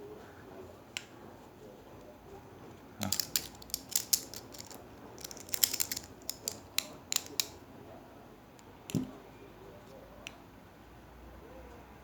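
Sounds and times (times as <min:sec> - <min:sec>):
sharp metal clicks of multitools: 0:03.0 - 0:07.6.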